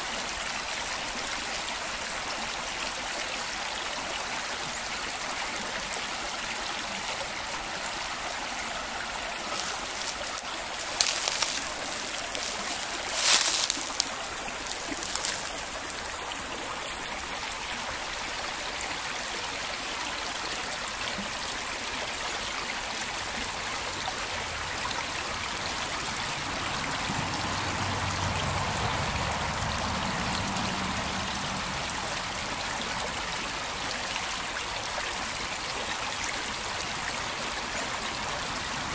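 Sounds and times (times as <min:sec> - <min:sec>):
brook trickling over rocks: 0:00.0 - 0:38.9.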